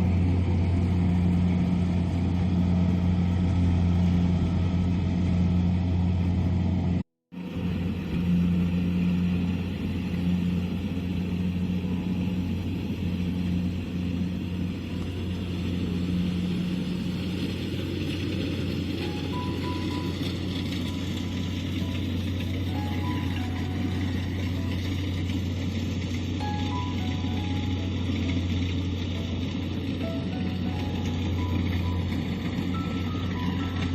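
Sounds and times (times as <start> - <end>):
diesel engine humming: 0.0 - 33.9.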